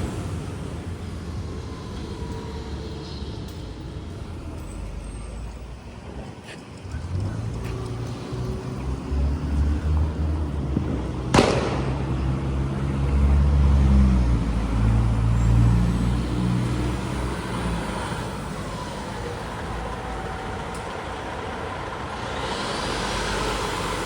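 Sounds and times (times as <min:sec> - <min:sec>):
diesel engine rumbling: 0:00.0 - 0:24.0
sharp crack: 0:10.7 - 0:13.3.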